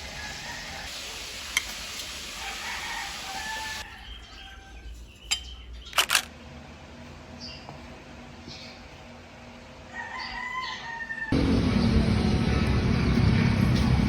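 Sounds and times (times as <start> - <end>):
rooster crowing: 0.0 - 0.9, 2.4 - 4.8, 9.9 - 11.5
sharp clicks: 5.9 - 6.3.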